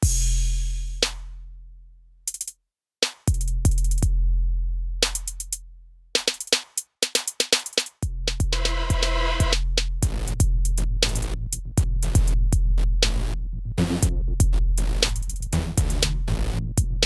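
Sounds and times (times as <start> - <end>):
punchy kick drums: 0.0 - 1.4, 3.2 - 5.5, 8.0 - 13.2, 13.8 - 17.0
hi-hat and snare hits: 0.0 - 1.6, 2.2 - 4.3, 4.9 - 17.0
electronic music: 8.5 - 9.6
deep sustained bass: 8.6 - 17.0.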